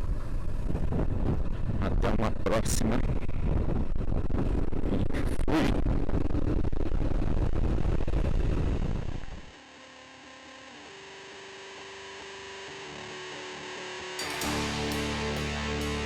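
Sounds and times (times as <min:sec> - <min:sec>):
distorted electric guitar music: 0:09.5 - 0:16.0.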